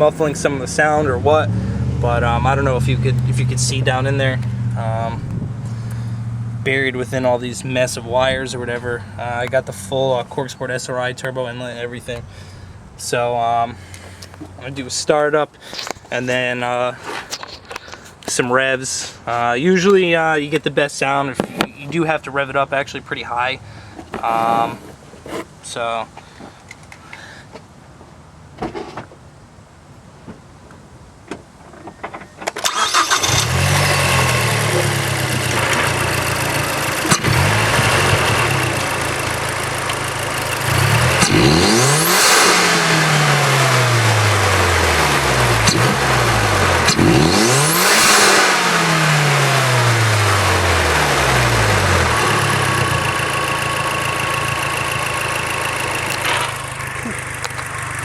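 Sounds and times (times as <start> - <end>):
car engine revving: 0.0 - 15.2, 32.6 - 58.0
car engine starting and idling: 0.0 - 20.7, 32.4 - 58.0.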